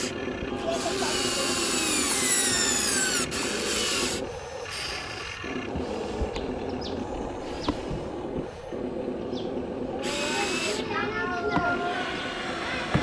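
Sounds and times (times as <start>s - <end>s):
rough scraping and grinding: 0.0s - 8.5s
electric motor whining: 0.0s - 9.0s, 9.8s - 13.0s.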